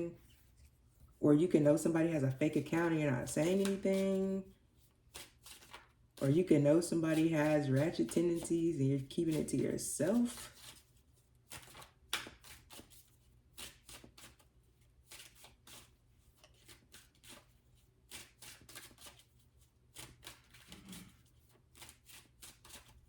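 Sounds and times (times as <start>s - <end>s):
cards being shuffled: 2.4s - 4.4s, 5.1s - 10.9s, 11.5s - 14.4s, 18.1s - 19.3s, 19.9s - 23.0s.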